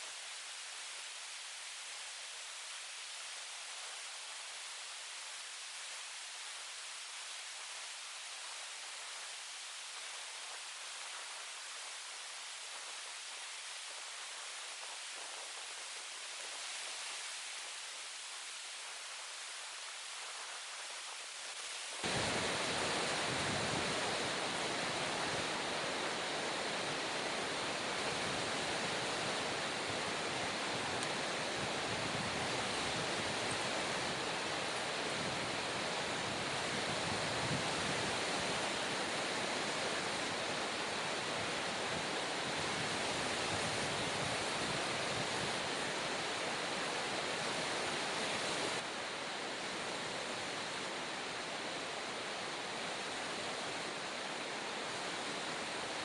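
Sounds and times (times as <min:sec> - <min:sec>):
fast-flowing river rushing: 0:21.9 - 0:56.0.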